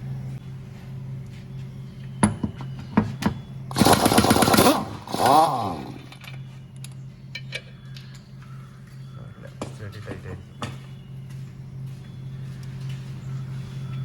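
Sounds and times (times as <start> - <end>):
steady low hum: 0.0 - 14.0
air impact wrench rattling: 3.7 - 6.4.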